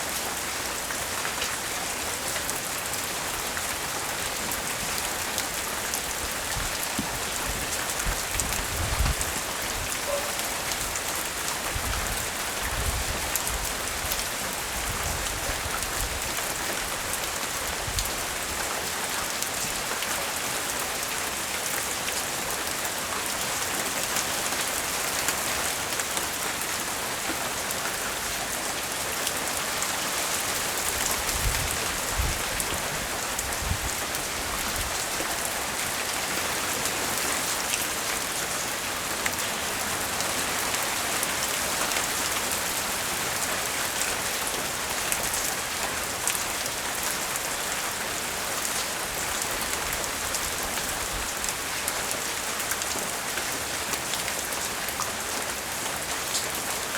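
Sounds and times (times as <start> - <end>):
steady rain patter: 0.0 - 56.9.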